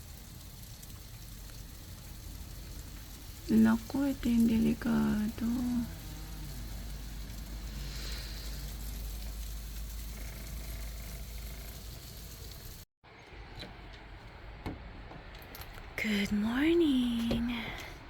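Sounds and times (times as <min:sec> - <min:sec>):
rain falling on snow: 0:00.0 - 0:12.8.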